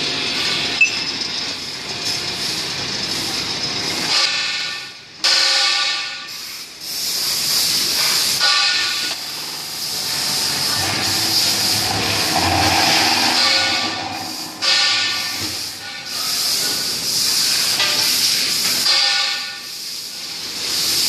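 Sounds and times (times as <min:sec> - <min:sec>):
pipe-cutting machine whining: 0:08.4 - 0:17.0.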